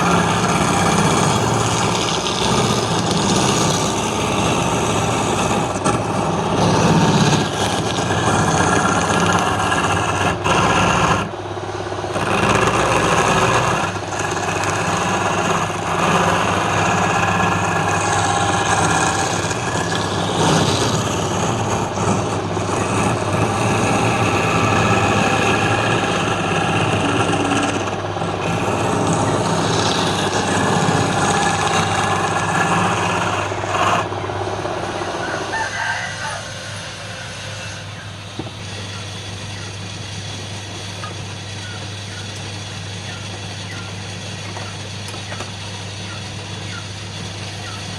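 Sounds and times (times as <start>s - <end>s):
tool scraping spinning wood: 0.0s - 47.9s
wood lathe motor hum: 0.0s - 47.9s.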